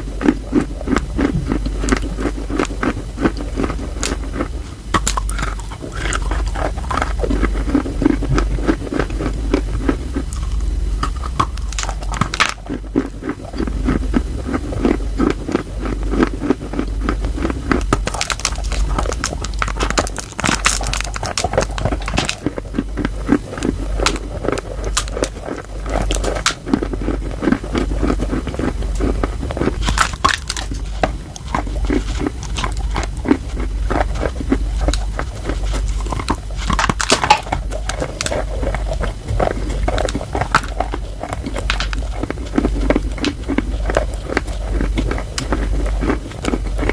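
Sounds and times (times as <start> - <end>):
chalk crunching while chewed: 0.0 - 46.9
steady low hum: 0.0 - 46.9.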